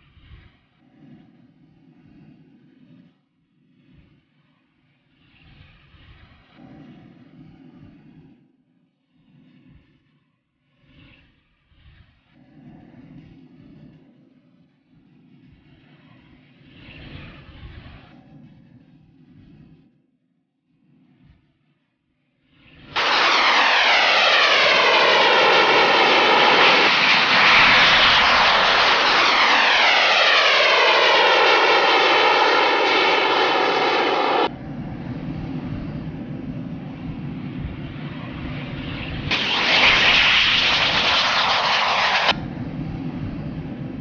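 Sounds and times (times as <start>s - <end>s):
airplane engines flying past: 0.0s - 19.8s, 22.4s - 44.0s
steady engine drone: 11.8s - 19.8s, 22.6s - 44.0s.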